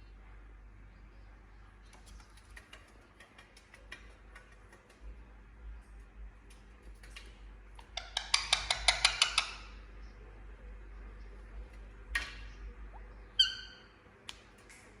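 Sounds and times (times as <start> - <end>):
parakeet chattering: 7.8 - 9.8, 13.3 - 14.0
parakeet squawk: 13.3 - 14.0
parakeet clear call: 13.4 - 14.0.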